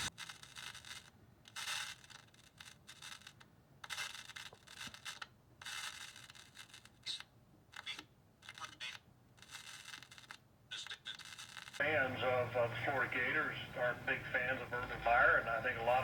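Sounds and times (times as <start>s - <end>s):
radio static and hiss: 11.8s - 16.0s.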